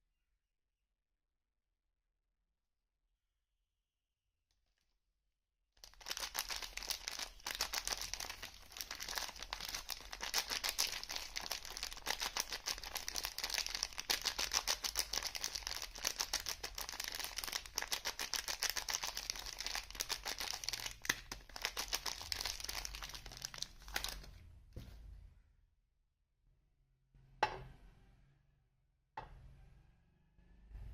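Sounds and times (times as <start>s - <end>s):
wrapping crinkling: 5.8s - 24.3s
wrapping tearing: 5.8s - 24.3s.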